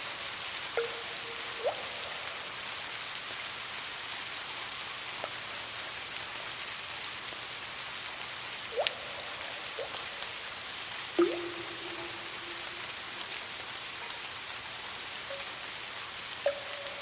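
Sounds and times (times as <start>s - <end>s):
soft rain hiss: 0.0s - 17.0s
water drips plinking: 0.7s - 2.8s, 8.6s - 17.0s.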